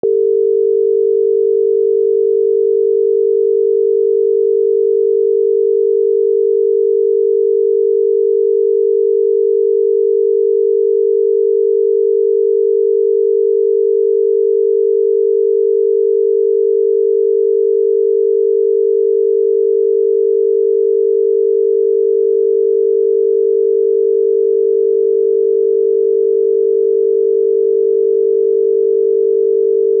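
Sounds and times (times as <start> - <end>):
telephone dial tone: 0.0 - 8.8.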